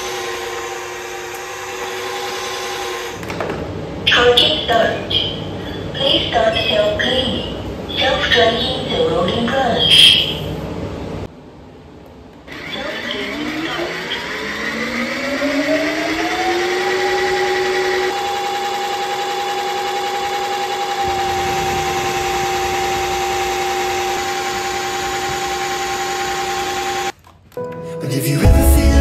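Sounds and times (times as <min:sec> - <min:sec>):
vacuum cleaner motor whine: 0:00.0 - 0:04.3, 0:12.5 - 0:27.1
low rushing noise: 0:21.0 - 0:25.0.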